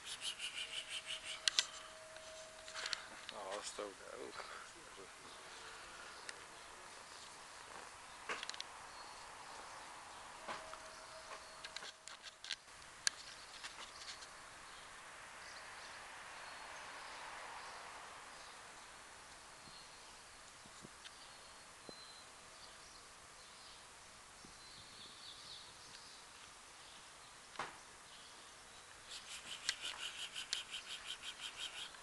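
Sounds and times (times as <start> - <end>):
faint high bird chirps: 0.0 - 6.4, 8.9 - 12.0, 21.0 - 26.3, 28.1 - 32.0
small clicks and rustles: 7.1 - 8.7, 11.6 - 14.4.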